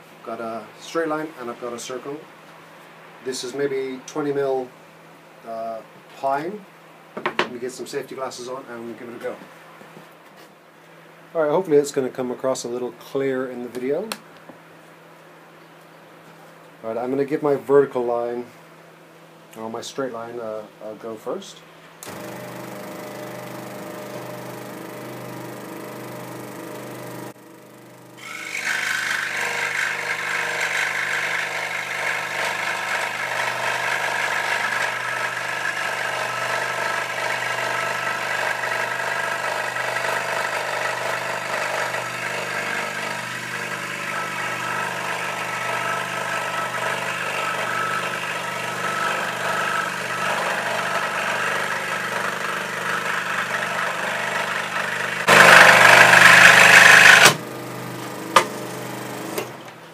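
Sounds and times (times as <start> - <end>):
saw cutting wood: 22.0 - 59.5
scroll saw humming: 22.0 - 59.8.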